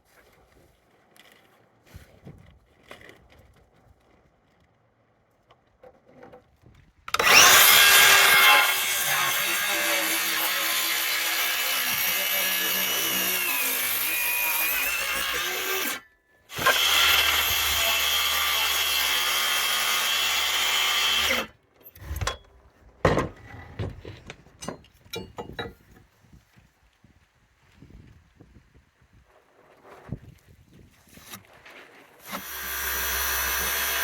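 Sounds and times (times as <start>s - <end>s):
power tool cutting wood: 7.1s - 21.5s, 32.2s - 34.0s
knocks and clatters: 22.0s - 26.1s.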